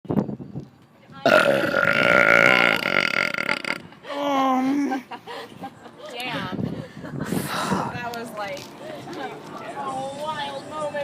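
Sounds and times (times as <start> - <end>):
loud raspy burp: 1.2 - 3.9.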